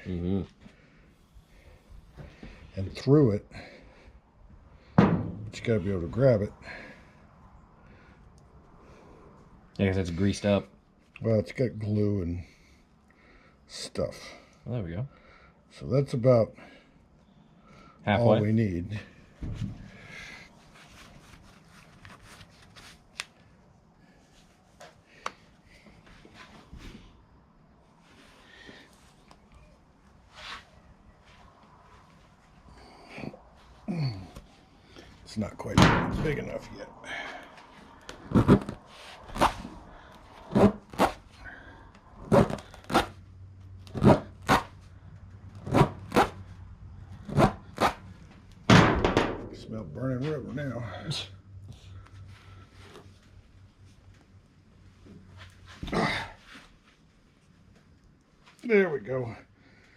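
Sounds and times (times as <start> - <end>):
faint rustling and scraping: 18.1 - 48.5, 49.5 - 58.9.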